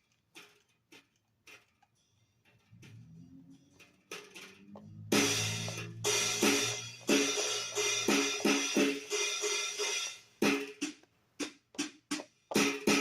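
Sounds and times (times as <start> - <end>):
drum and cymbal hits: 4.1 - 13.0
cymbal crash: 4.3 - 10.7.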